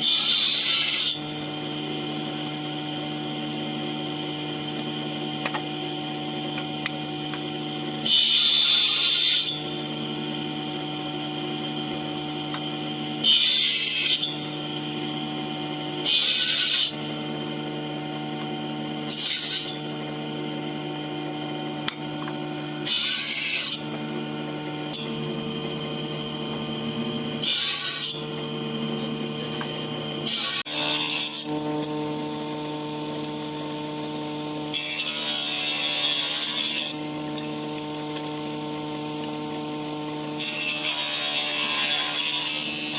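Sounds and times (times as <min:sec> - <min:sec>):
power tool cutting wood: 0:00.0 - 0:42.9
power tool running: 0:00.0 - 0:42.9.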